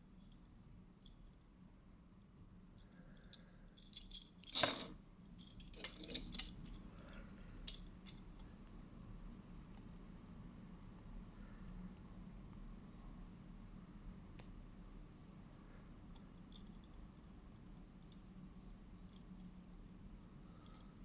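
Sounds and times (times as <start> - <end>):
toy clattering: 3.2 - 8.2.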